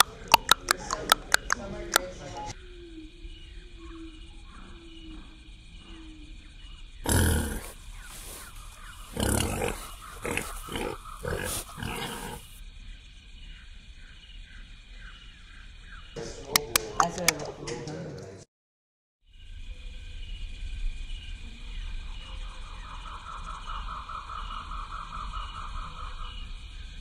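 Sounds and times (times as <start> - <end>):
animal calls: 7.0 - 12.6.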